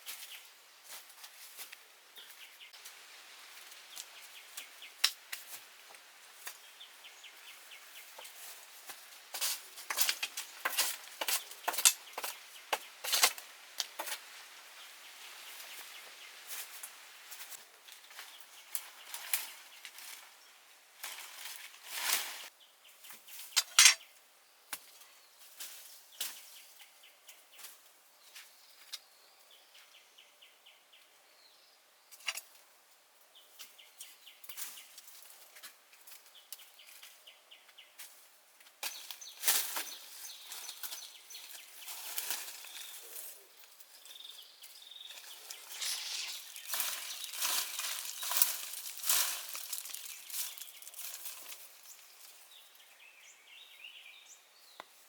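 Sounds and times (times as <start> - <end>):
camp gear clicks and knocks: 23.6 - 24.0.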